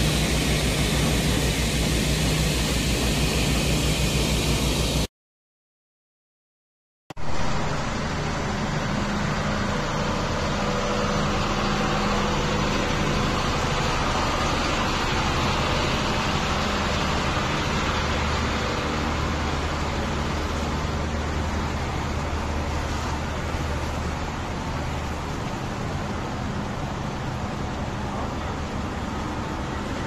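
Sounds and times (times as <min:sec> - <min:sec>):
aircraft engine drone: 0:00.0 - 0:05.1.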